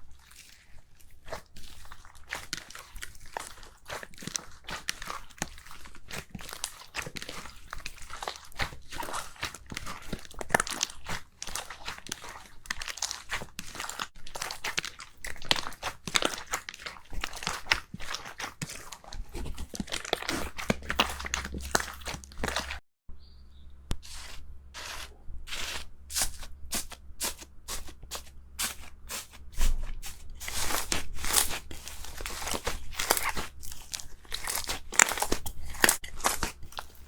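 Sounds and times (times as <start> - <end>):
slime crackling and popping: 1.3 - 22.8, 30.0 - 37.0.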